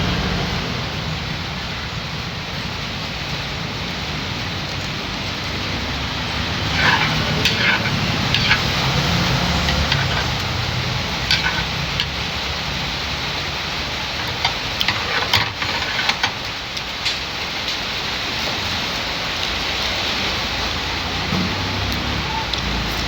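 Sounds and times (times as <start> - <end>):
engine rumbling: 0.0 - 23.0
steady rain: 0.0 - 23.0
sharp clicks and clinks: 11.3 - 12.2, 14.2 - 16.4.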